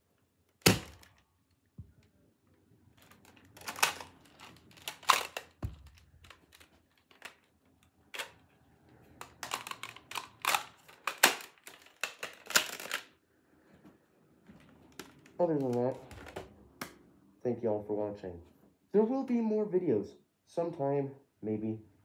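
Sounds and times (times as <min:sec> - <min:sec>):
toy blaster clicks and rattles: 0:03.0 - 0:07.5, 0:09.2 - 0:13.1.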